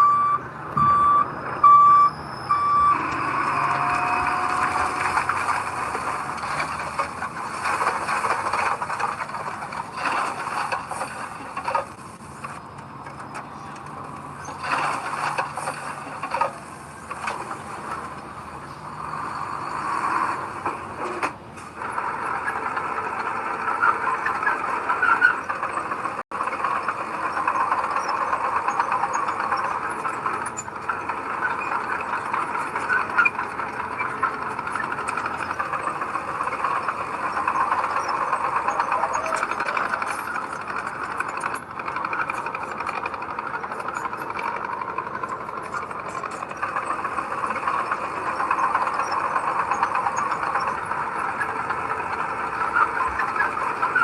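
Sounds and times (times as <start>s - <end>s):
reversing alarm beeping: 0.0s - 6.8s
heavy machinery squealing: 0.0s - 54.0s.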